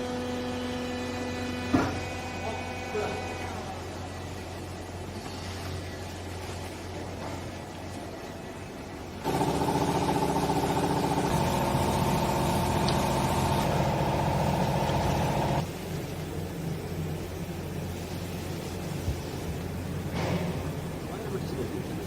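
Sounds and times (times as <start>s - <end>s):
hydraulic power unit humming: 0.0s - 6.0s, 7.6s - 18.0s.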